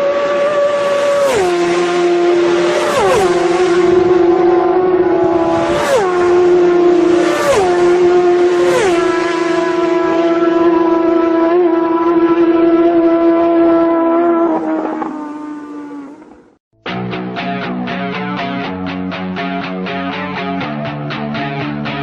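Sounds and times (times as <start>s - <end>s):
race cars passing at speed: 0.0s - 16.5s.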